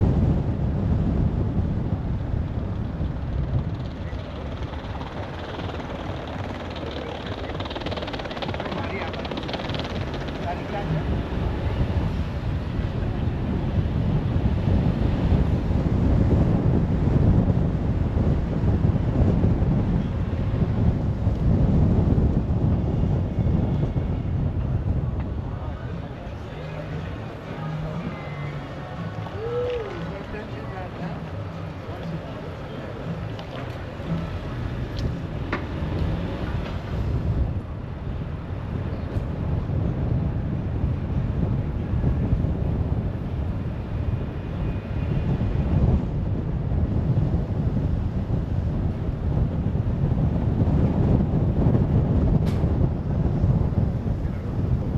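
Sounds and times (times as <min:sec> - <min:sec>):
car engine rumble: 0:00.0 - 0:54.9
road noise: 0:00.0 - 0:54.9
wind buffeting microphone: 0:00.0 - 0:54.9.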